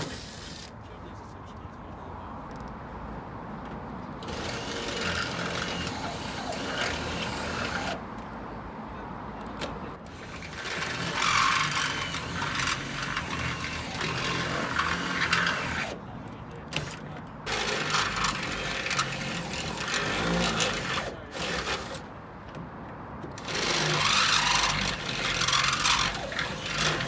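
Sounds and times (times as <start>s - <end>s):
power drill boring through metal: 0.0s - 0.7s, 4.2s - 8.0s, 10.1s - 16.0s, 16.8s - 22.1s, 23.4s - 27.0s.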